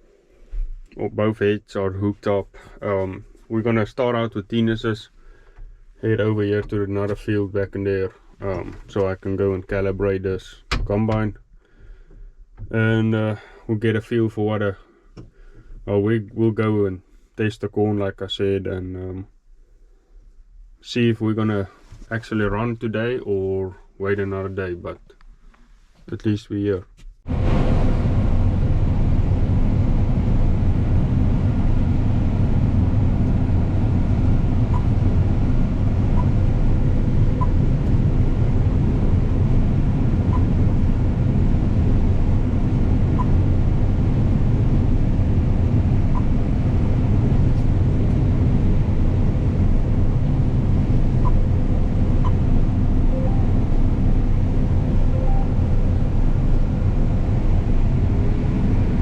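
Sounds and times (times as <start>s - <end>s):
combine harvester engine droning: 0.9s - 11.3s, 27.3s - 59.0s
faint short high blips: 53.1s - 53.7s, 55.1s - 56.0s.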